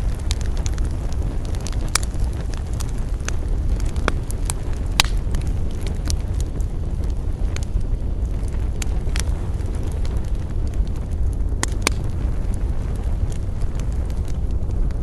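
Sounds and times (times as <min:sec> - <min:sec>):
campfire crackling and popping: 0:00.0 - 0:15.0
fire deep rumble: 0:00.0 - 0:15.0.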